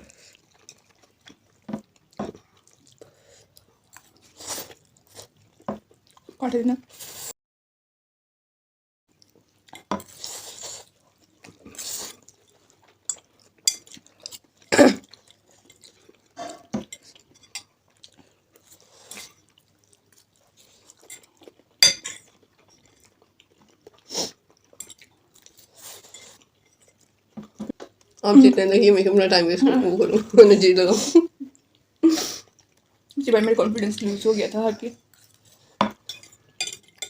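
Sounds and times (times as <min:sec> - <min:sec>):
utensils clinking on dishes: 0:21.1 - 0:23.1, 0:35.8 - 0:37.0.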